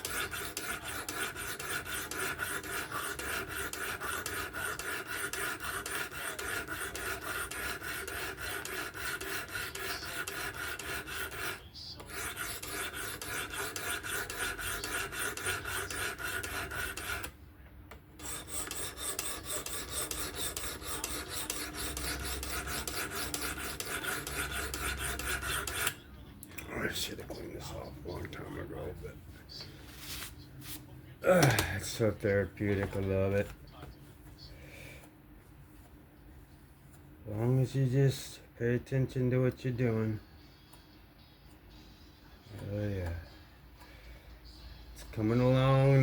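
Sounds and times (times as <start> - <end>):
sharpening stone rasping on blade: 0.0 - 17.3, 18.2 - 26.0.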